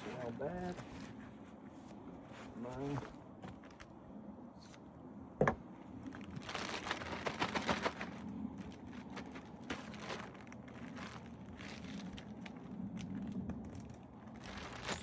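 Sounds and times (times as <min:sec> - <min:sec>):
crinkling handling noise: 0:00.0 - 0:04.0, 0:05.6 - 0:15.0.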